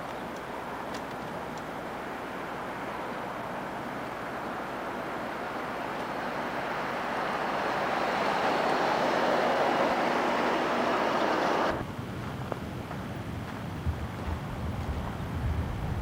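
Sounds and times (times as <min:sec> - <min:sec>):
road traffic rush: 0:00.0 - 0:12.2
vehicle approaching: 0:01.8 - 0:11.9.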